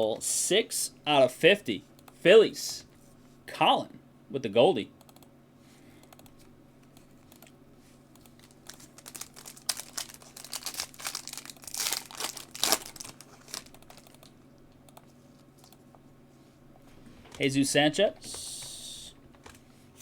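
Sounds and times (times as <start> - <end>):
foil wrapper crinkling and tearing: 8.4 - 14.1.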